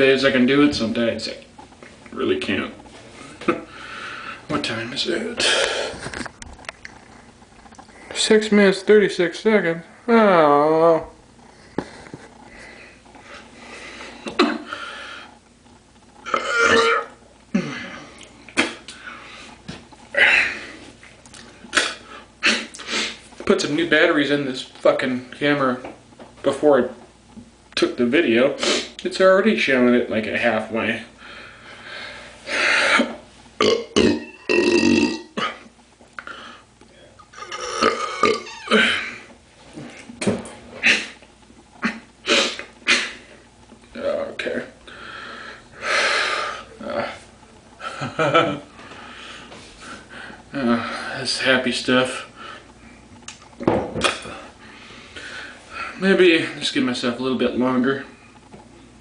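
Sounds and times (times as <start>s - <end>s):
man belching: 16.3s - 17.9s, 33.6s - 35.7s, 37.3s - 39.1s.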